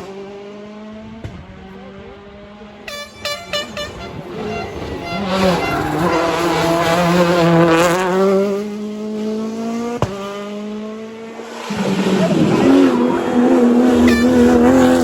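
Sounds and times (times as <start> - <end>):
rally car engine revving: 0.0 - 15.0
car passing under power: 4.2 - 15.0.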